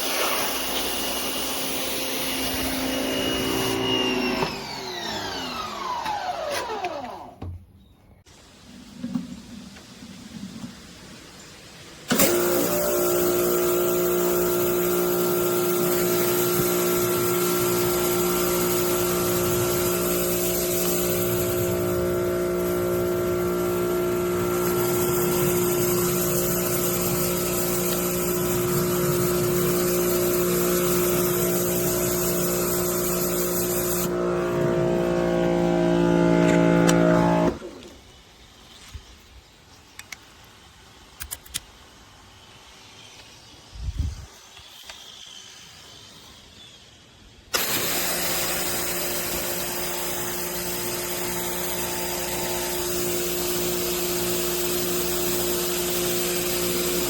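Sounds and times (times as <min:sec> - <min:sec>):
spray hissing: 0:00.0 - 0:04.6, 0:08.3 - 0:37.9, 0:47.2 - 0:57.0
pressure washer motor hum: 0:00.0 - 0:07.5, 0:12.1 - 0:38.0, 0:47.5 - 0:57.0.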